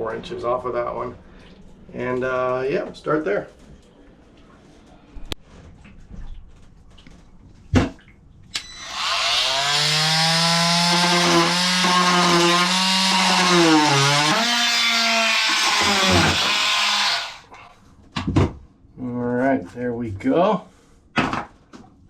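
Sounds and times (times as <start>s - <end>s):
electric power saw cutting wood: 8.6s - 17.5s.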